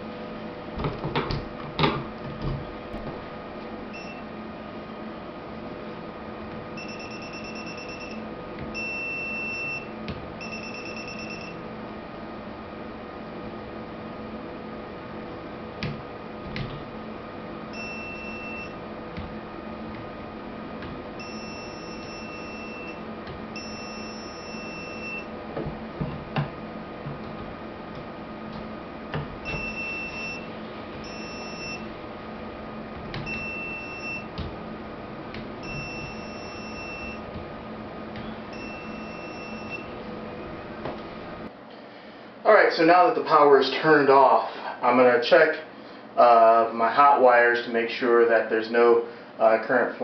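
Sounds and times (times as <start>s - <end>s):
steady electrical hum: 0.0s - 50.0s
sharp knocks and clicks: 0.8s - 3.2s, 15.8s - 16.9s, 25.6s - 29.7s, 34.3s - 34.6s
high-pitched electronic beeps: 6.8s - 8.2s, 8.8s - 11.6s, 21.2s - 23.0s, 23.6s - 25.3s, 29.4s - 31.9s, 35.6s - 37.3s, 38.2s - 39.9s.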